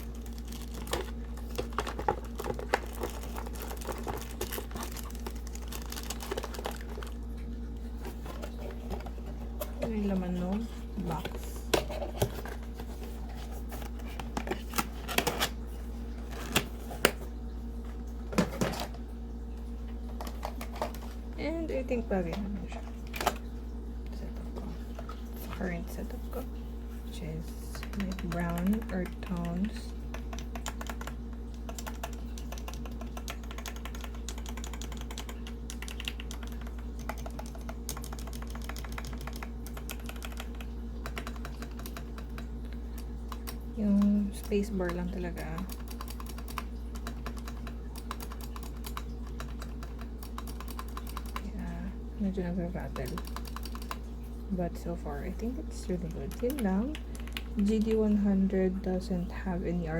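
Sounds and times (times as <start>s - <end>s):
steady low hum: 0.0s - 59.9s.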